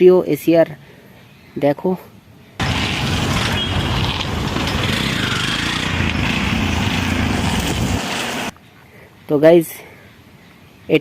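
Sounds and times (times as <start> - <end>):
auto-rickshaw engine idling: 2.6 - 7.4.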